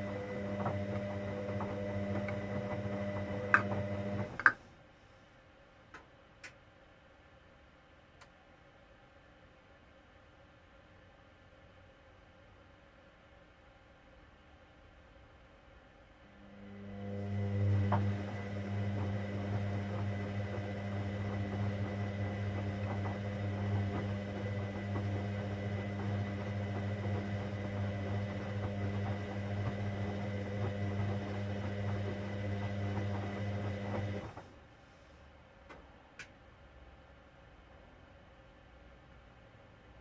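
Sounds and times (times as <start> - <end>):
washing machine humming: 0.0 - 4.6, 16.3 - 34.7.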